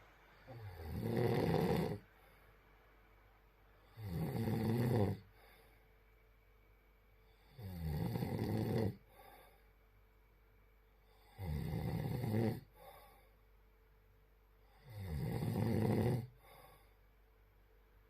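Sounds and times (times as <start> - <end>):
person snoring: 0.4 - 2.1, 3.8 - 5.5, 7.3 - 9.6, 11.1 - 13.2, 14.6 - 16.9
faint breath: 2.0 - 2.8, 5.2 - 7.6, 9.0 - 10.0, 12.6 - 13.6, 16.3 - 17.2.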